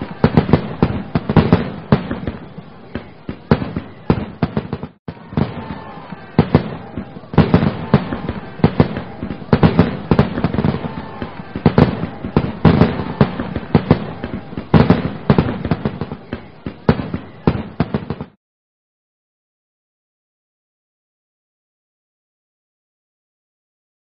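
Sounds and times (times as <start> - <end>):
fireworks bangs and crackles: 0.0 - 18.4.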